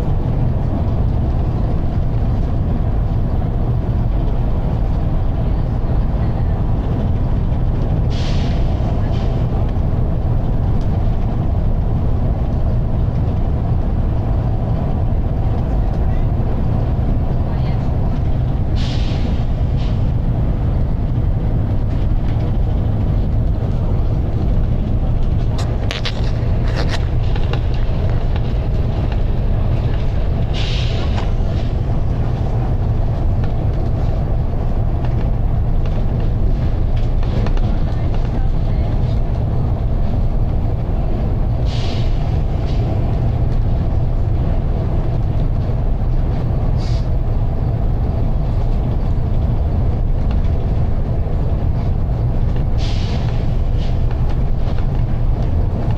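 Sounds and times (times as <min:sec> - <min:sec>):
bus engine drone: 0:00.0 - 0:55.9
air brake hisses: 0:08.1 - 0:08.7, 0:18.8 - 0:20.0, 0:30.5 - 0:31.2, 0:41.6 - 0:42.3, 0:46.8 - 0:47.1, 0:52.8 - 0:53.4.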